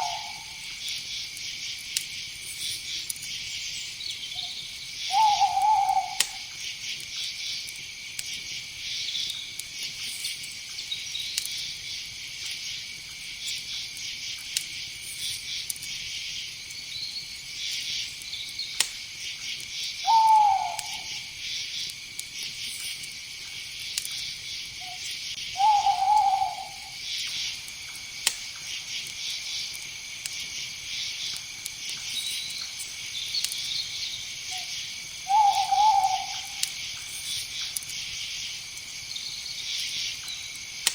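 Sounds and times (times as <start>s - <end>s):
owl hooting: 0.0s - 0.6s, 5.1s - 6.5s, 20.0s - 21.3s, 25.6s - 27.0s, 34.5s - 36.7s
crickets trilling: 0.0s - 40.9s.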